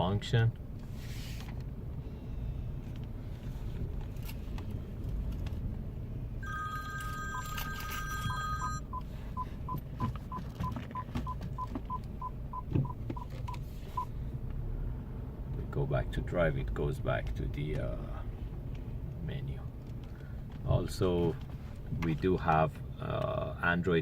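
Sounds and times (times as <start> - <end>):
low engine rumble: 0.0 - 24.0
parking sensor beeping: 6.4 - 14.2.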